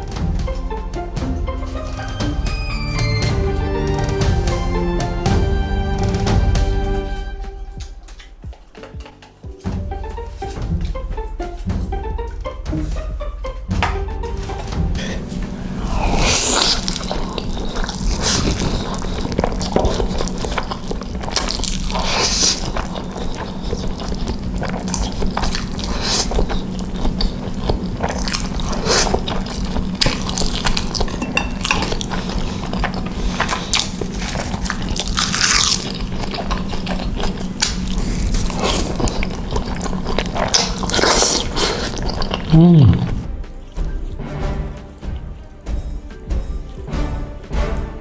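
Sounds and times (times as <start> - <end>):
wet mouth clicks: 15.0 - 43.3
person chewing noodles: 15.0 - 45.3.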